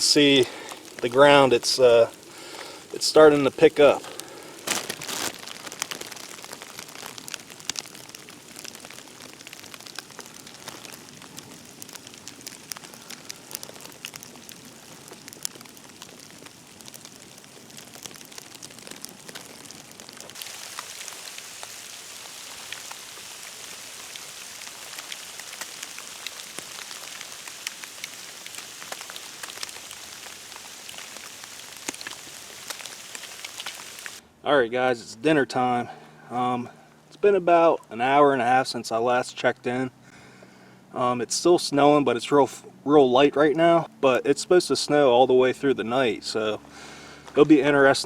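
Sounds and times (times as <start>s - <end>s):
wet snow pattering: 0.0s - 34.2s.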